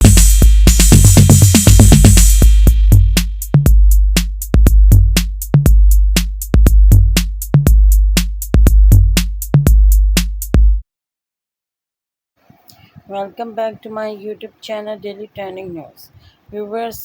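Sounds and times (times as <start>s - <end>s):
electronic music with drum-machine beat: 0.0s - 10.8s.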